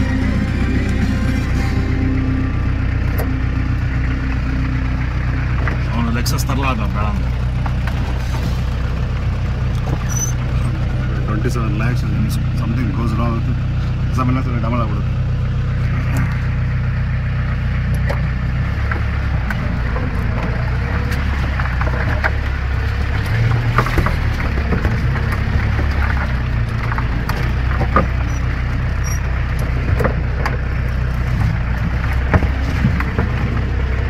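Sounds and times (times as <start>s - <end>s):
engine droning: 0.0s - 34.0s
knocks and rattles: 3.0s - 11.2s, 18.0s - 34.0s.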